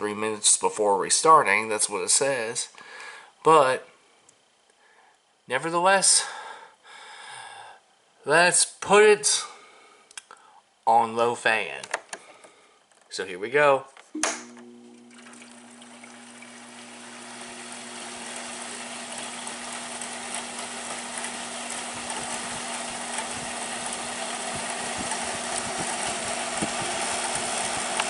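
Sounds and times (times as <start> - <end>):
air conditioner switch click: 14.2 - 14.7
fan motor hum and rushing air: 14.3 - 28.0.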